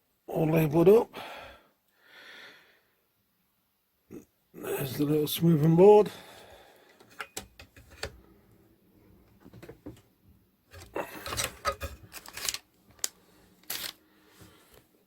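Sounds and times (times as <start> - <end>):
small objects clicking and knocking: 10.7 - 14.0.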